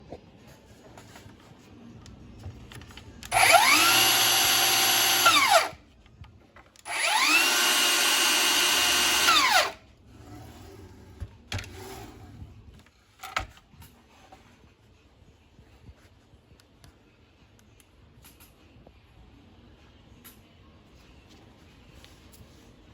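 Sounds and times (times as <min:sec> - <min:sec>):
miter saw whining: 0:03.3 - 0:05.7, 0:06.9 - 0:09.8.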